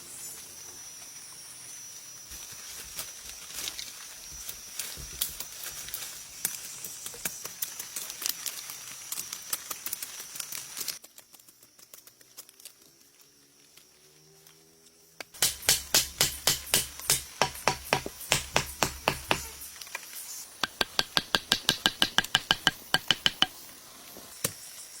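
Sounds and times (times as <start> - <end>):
crackling and rustling of twigs: 0.2 - 15.2, 19.4 - 20.8.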